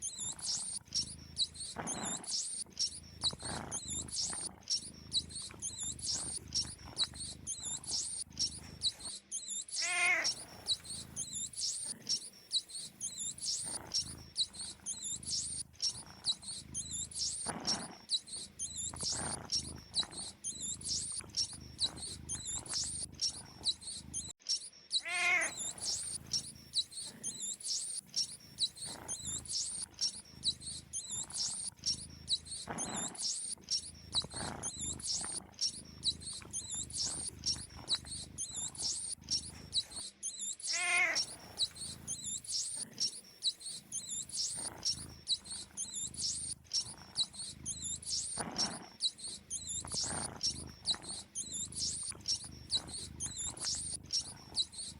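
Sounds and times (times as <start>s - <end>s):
mouse squeaking: 0.0s - 54.9s
cat meowing: 9.8s - 11.1s, 25.0s - 26.2s, 40.7s - 41.5s.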